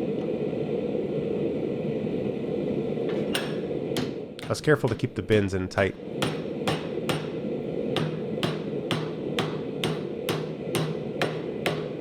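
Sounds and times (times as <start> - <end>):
hammer striking steel on anvil: 3.3 - 5.5, 6.2 - 7.4, 8.0 - 12.0.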